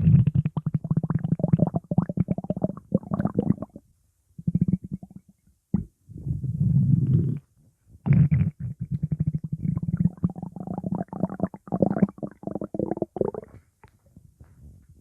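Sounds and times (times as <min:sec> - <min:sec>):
stomach growling: 0:04.4 - 0:14.0.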